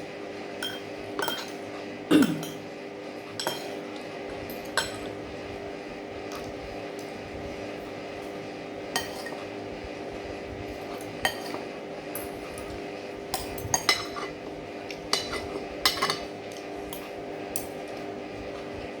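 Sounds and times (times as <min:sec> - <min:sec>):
steady low hum: 0:00.0 - 0:19.0
cutlery clinking against a plate: 0:00.6 - 0:02.7, 0:03.3 - 0:05.2, 0:09.0 - 0:09.5, 0:10.9 - 0:18.0.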